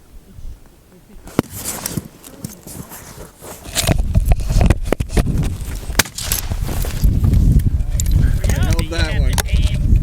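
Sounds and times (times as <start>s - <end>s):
wind buffeting microphone: 3.6s - 10.0s.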